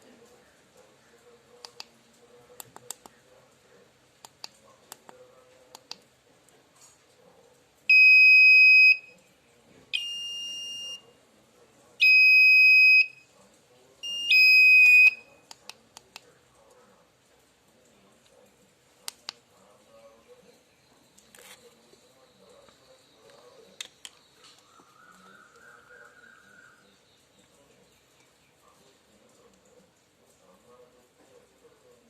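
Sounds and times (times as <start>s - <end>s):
high-pitched buzzer beeps: 10.0s - 11.0s.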